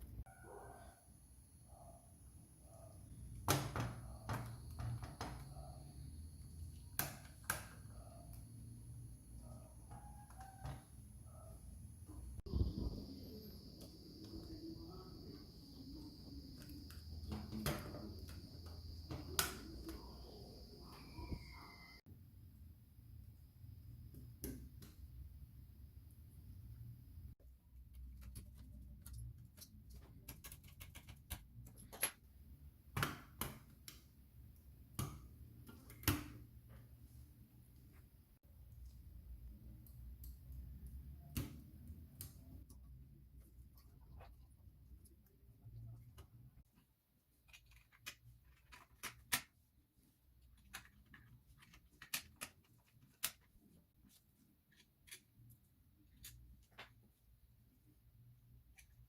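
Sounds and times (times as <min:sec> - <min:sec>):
small parts and tools clicking: 0:27.8 - 0:32.3, 0:47.3 - 0:49.6, 0:50.3 - 0:56.8.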